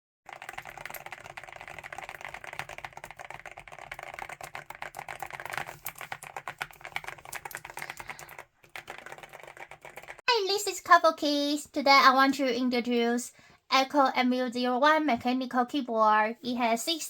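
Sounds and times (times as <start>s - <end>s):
fast mechanical keyboard typing: 0.3s - 10.2s.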